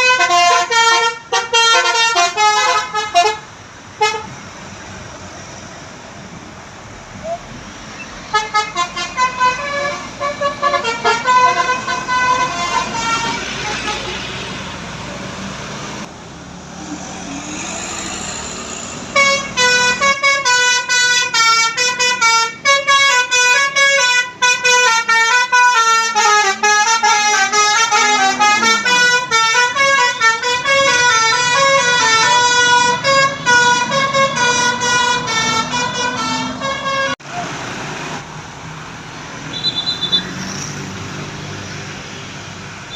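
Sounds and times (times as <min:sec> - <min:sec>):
road traffic noise: 0:00.0 - 0:42.9
musical air horn tune: 0:19.2 - 0:37.2.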